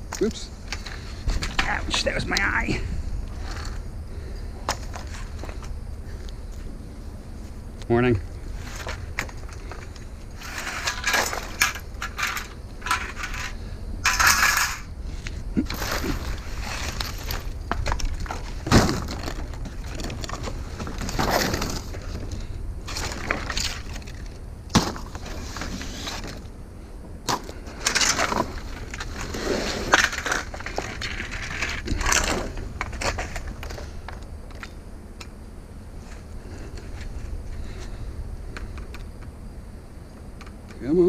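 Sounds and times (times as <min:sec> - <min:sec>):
metal scrap clinking and rattling: 0:08.7 - 0:14.9, 0:22.9 - 0:26.4, 0:27.3 - 0:33.8.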